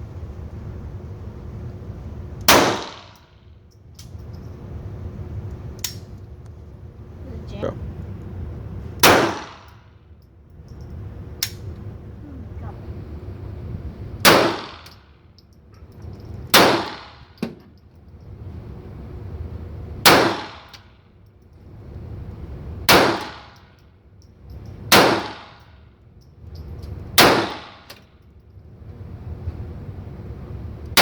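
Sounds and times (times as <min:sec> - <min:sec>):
pistol shots: 0:02.5 - 0:03.3, 0:09.0 - 0:09.8, 0:14.2 - 0:15.0, 0:16.5 - 0:17.3, 0:20.0 - 0:20.8, 0:22.9 - 0:23.6, 0:24.9 - 0:25.6, 0:27.2 - 0:28.0
small click: 0:05.8 - 0:06.2.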